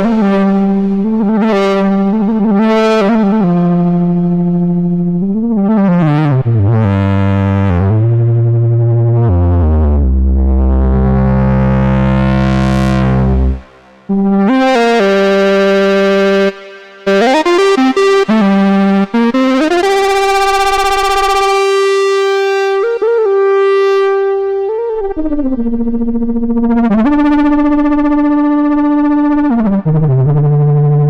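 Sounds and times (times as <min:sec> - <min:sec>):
synthesizer lead line: 0:12.1 - 0:23.4.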